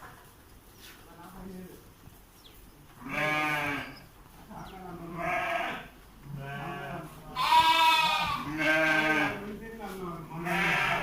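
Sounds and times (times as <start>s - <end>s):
sheep bleating: 3.0s - 4.0s, 5.0s - 9.4s, 10.3s - 11.0s.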